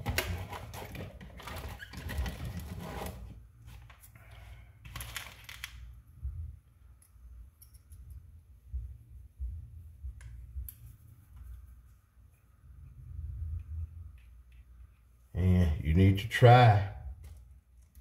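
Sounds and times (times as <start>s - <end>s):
tools rustling and clicking: 4.8s - 6.0s, 6.9s - 8.4s.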